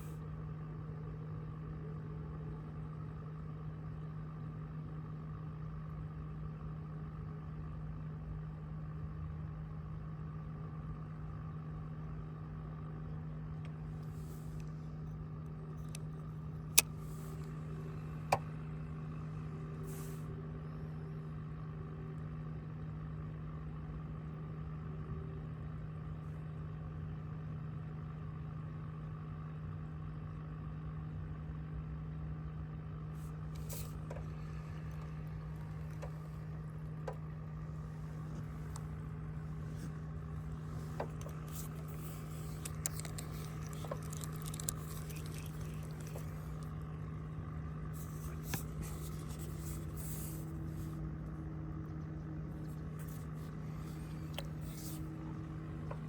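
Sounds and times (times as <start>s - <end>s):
small clicks and ticks: 33.2s - 37.3s, 39.6s - 46.9s
motor humming: 33.2s - 56.0s.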